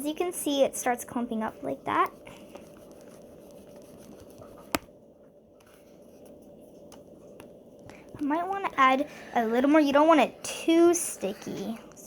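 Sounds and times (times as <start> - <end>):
sticky slime mixing: 0.0 - 4.9.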